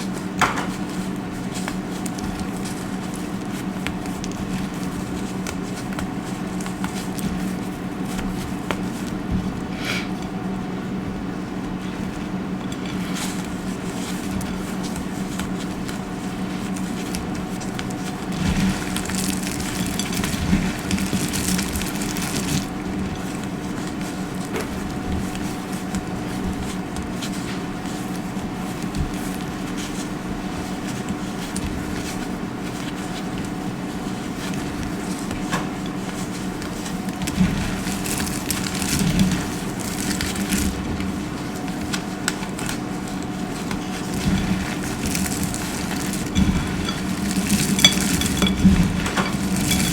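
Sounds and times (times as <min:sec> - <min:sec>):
dry soap crunching: 0:12.9 - 0:27.4, 0:34.2 - 0:49.9
steady low hum: 0:43.4 - 0:49.9.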